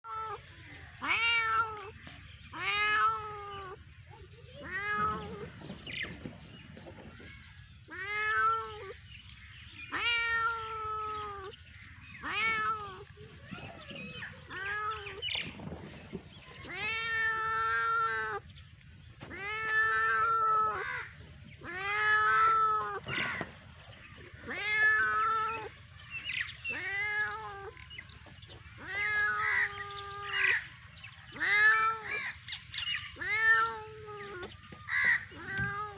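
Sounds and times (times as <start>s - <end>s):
cat meowing: 1.0s - 1.9s, 7.9s - 9.0s, 9.9s - 11.5s, 12.2s - 15.3s, 16.6s - 18.4s, 19.2s - 23.4s, 24.4s - 25.9s, 26.7s - 27.8s, 28.8s - 30.6s, 31.3s - 32.4s, 33.2s - 35.9s.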